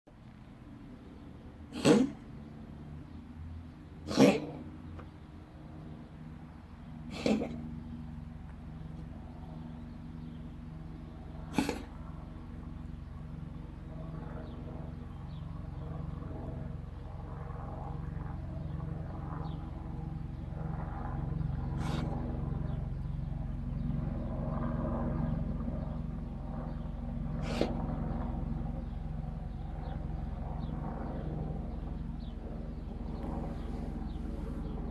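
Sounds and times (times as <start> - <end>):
low steady rumble: 0.1 - 34.9
cat wheezing raspy meow: 1.7 - 2.2, 7.1 - 7.6, 11.5 - 11.9.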